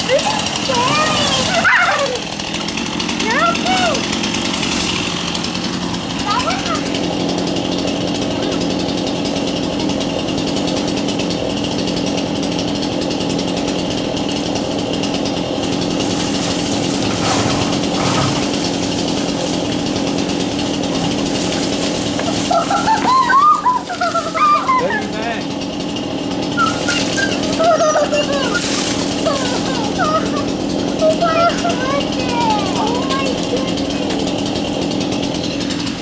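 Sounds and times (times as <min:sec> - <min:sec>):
person speaking: 0:00.0 - 0:02.2, 0:23.8 - 0:25.5
chainsaw engine running: 0:00.0 - 0:36.0.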